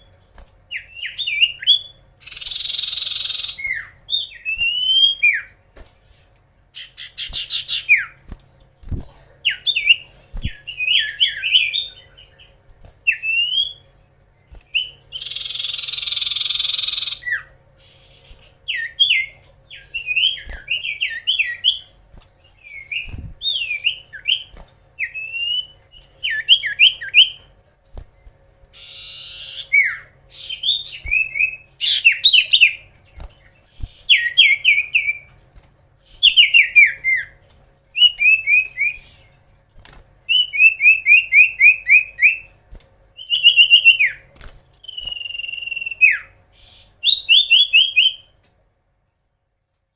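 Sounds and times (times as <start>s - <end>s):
bird singing whistled notes: 44.8s - 46.4s.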